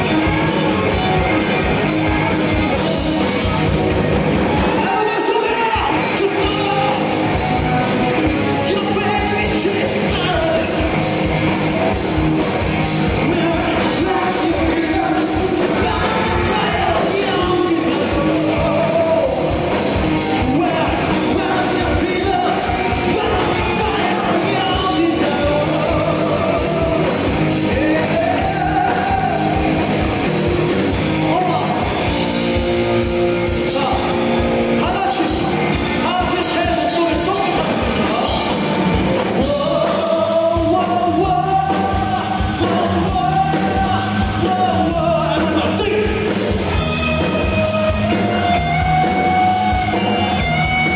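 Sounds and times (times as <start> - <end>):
loud steady drums: 0.0 - 50.9
rock band playing live: 0.0 - 50.9
person singing: 13.1 - 29.9, 33.6 - 46.4.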